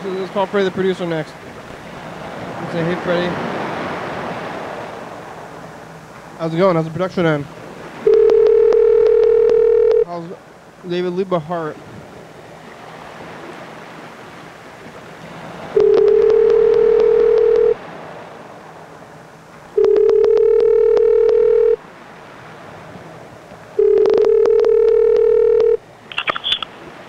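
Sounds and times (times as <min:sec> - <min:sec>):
telephone ringback tone: 0:08.0 - 0:10.1, 0:15.8 - 0:17.8, 0:19.8 - 0:21.8, 0:23.8 - 0:26.6
short clicks: 0:26.1 - 0:26.7.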